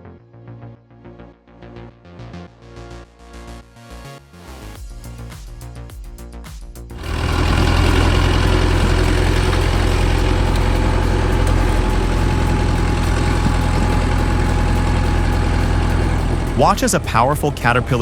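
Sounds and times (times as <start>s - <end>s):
music: 0.0s - 18.0s
heavy machine engine running: 7.0s - 18.0s.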